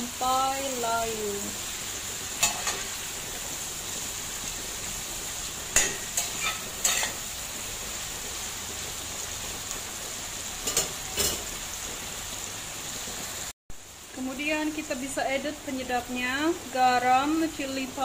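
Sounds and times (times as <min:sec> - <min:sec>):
vegetables sizzling in a pan: 0:00.0 - 0:18.0
utensil scraping pan: 0:05.8 - 0:07.2.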